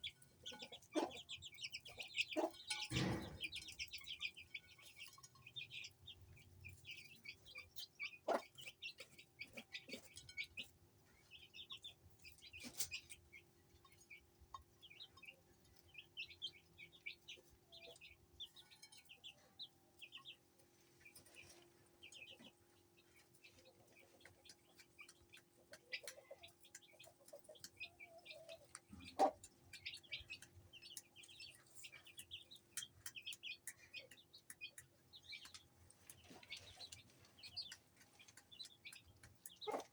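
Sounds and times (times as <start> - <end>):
hen clucking: 0.0 - 5.9, 7.7 - 10.7, 23.6 - 39.9
chicks peeping: 0.0 - 39.9
sharp knocks: 2.9 - 3.6.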